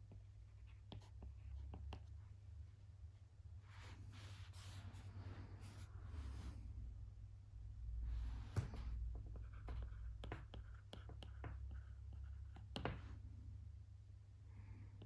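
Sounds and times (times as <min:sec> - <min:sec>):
low steady hum: 0:00.0 - 0:15.0
pen writing stroke: 0:09.4 - 0:12.8.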